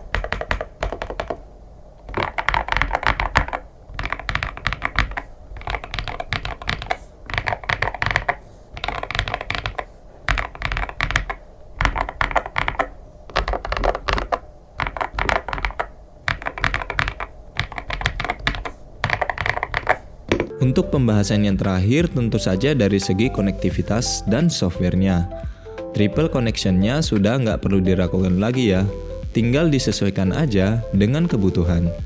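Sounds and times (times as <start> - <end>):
keyboard typing: 0.0 - 1.4, 2.1 - 20.7.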